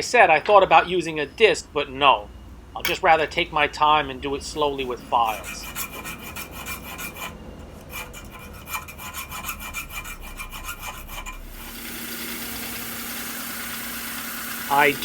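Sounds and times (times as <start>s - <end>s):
hand file rasping on steel: 5.1s - 11.7s
belt sander whirring: 10.9s - 15.0s.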